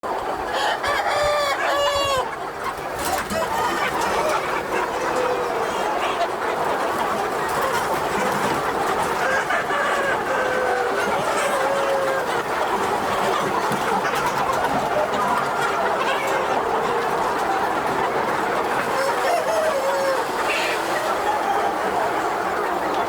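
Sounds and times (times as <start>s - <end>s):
chickens clucking: 0.0s - 23.0s
loud drawn-out chicken call: 0.4s - 6.2s, 7.6s - 12.6s, 15.2s - 22.4s.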